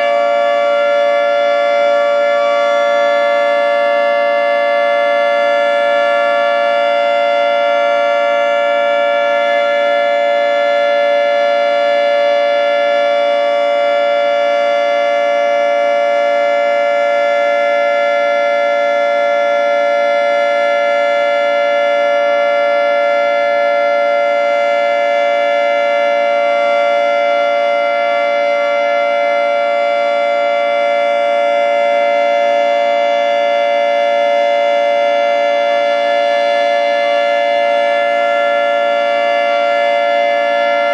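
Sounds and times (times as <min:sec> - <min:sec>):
outdoor warning siren steady chord: 0:00.0 - 0:40.9.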